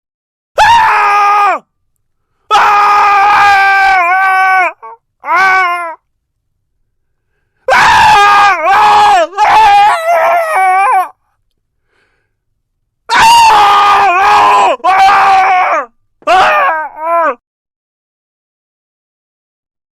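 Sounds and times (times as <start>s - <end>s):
person screaming: 0.6s - 1.6s, 2.5s - 6.0s, 7.7s - 11.2s, 13.1s - 17.4s.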